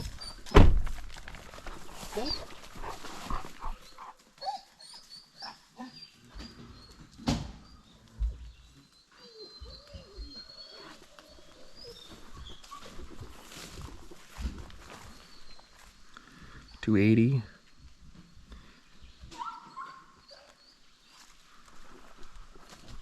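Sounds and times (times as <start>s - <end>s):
hounds whining and yelping: 1.9s - 13.9s, 19.3s - 21.2s.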